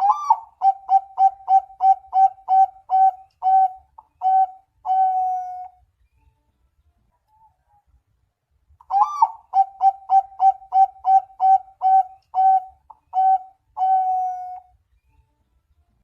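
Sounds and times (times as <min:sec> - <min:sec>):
dove cooing: 0:00.0 - 0:05.7, 0:08.9 - 0:14.7.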